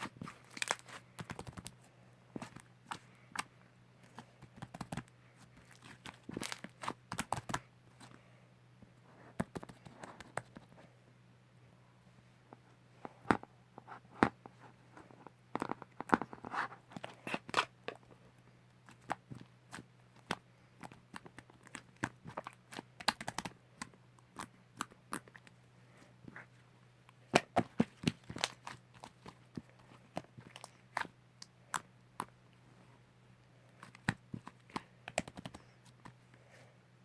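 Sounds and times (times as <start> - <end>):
slime squishing with clicking pops: 18.8 - 25.6, 33.8 - 35.7.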